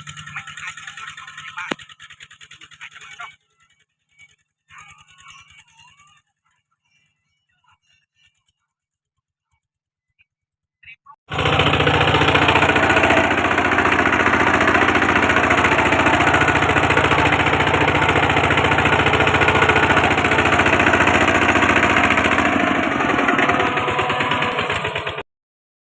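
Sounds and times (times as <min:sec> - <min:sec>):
diesel engine chugging: 0:00.0 - 0:06.2, 0:11.3 - 0:25.2.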